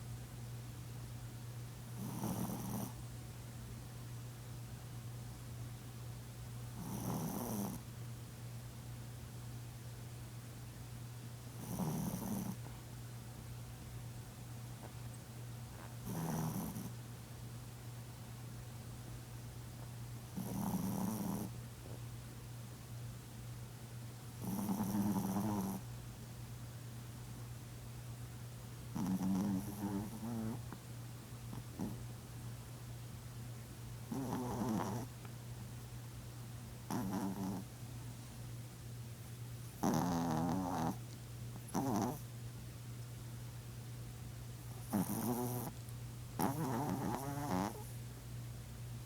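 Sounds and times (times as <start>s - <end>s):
steady low hum: 0.0s - 49.0s
dog snoring: 2.0s - 3.0s, 6.7s - 7.9s, 11.5s - 12.7s, 16.0s - 17.0s, 20.3s - 22.0s, 24.4s - 25.9s, 28.9s - 30.8s, 31.5s - 32.0s, 34.1s - 35.1s, 36.9s - 37.7s, 39.8s - 41.1s, 41.7s - 42.2s, 44.7s - 48.0s.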